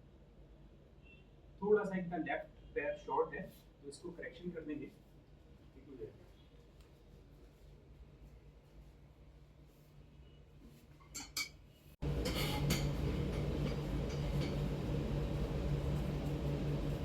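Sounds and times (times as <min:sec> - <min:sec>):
steady machine hum: 0:12.0 - 0:17.0.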